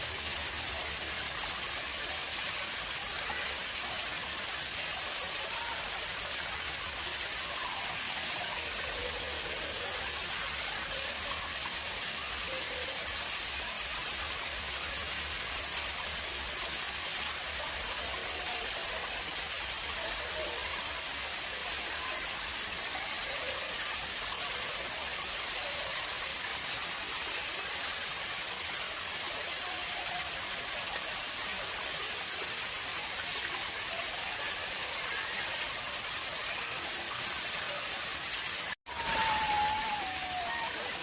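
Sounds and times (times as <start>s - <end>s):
water splashing into a pond: 0.0s - 41.0s.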